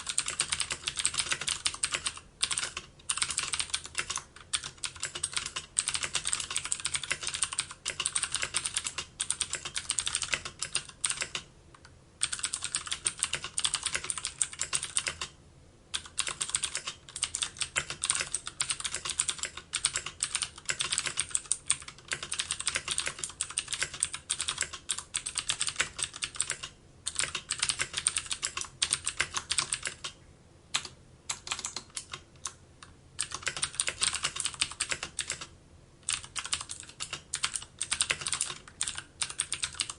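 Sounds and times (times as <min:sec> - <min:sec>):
computer keyboard typing: 0:00.0 - 0:30.2, 0:30.8 - 0:39.9.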